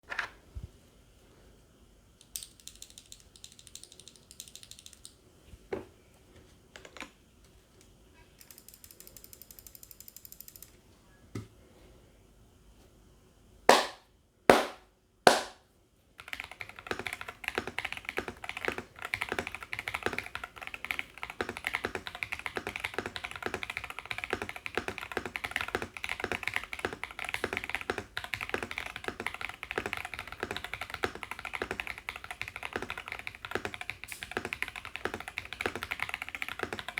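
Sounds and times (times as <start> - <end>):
fast keyboard typing: 2.4 - 5.1, 16.2 - 36.9
loud knocks: 13.7 - 15.6.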